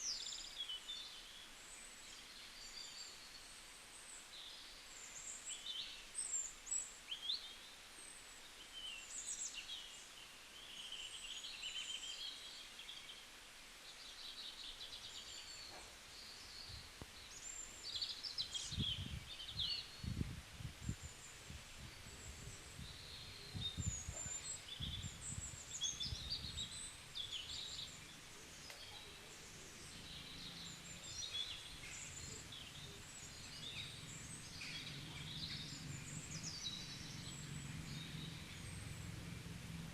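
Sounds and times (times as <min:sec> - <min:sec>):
faint steady hiss: 0:00.0 - 0:39.9
birds singing and chirping: 0:14.0 - 0:39.9.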